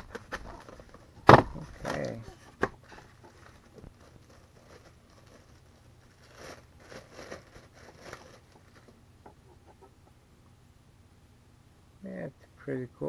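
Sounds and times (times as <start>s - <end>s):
packaging rustling and crinkling: 0.0s - 2.2s, 2.8s - 9.0s.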